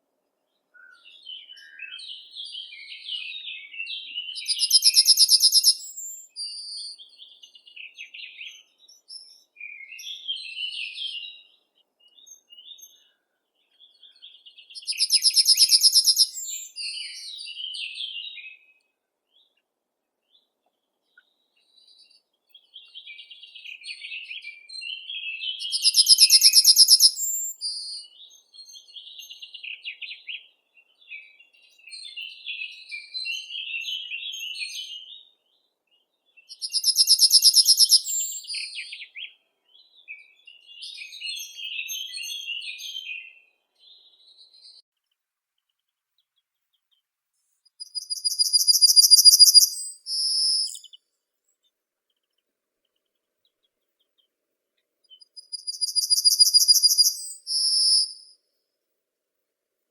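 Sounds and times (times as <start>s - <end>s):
soft bird chirps: 0.4s - 58.8s
buzzy bird trill: 4.4s - 6.2s, 14.8s - 16.5s, 25.7s - 27.5s, 36.5s - 38.7s, 47.8s - 50.9s, 55.2s - 58.2s.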